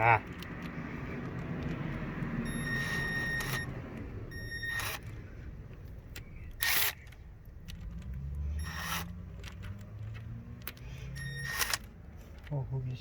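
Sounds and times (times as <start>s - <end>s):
short metallic squeaks: 2.5s - 3.7s, 4.3s - 5.1s, 8.5s - 9.2s, 11.0s - 11.9s.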